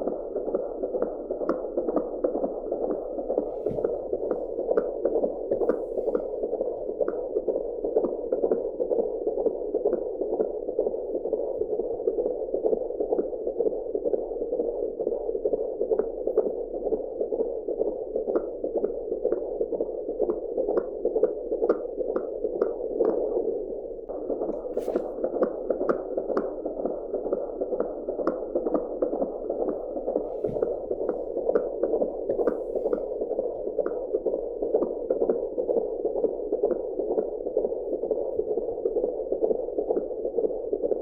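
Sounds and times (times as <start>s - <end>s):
fetal heartbeat on doppler: 0.0s - 41.0s.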